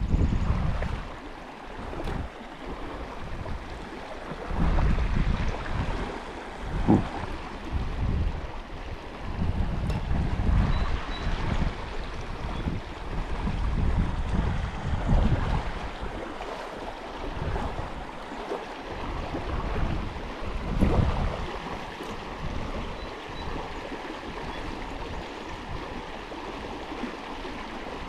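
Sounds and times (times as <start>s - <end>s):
stream water rushing: 0.0s - 28.0s.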